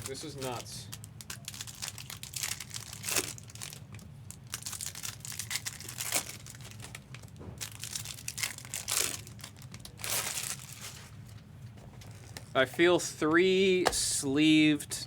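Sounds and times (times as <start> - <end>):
card pack wrappers crinkling and tearing: 0.0 - 11.2.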